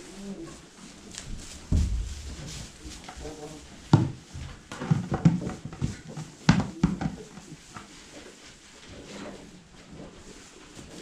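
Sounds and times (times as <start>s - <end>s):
knocks and thumps in stall: 1.6s - 3.2s.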